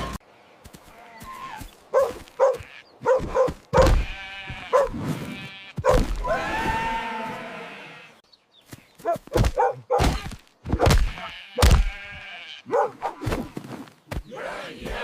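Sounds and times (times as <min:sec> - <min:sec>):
sheep bleating: 0:03.8 - 0:08.2, 0:11.0 - 0:12.7.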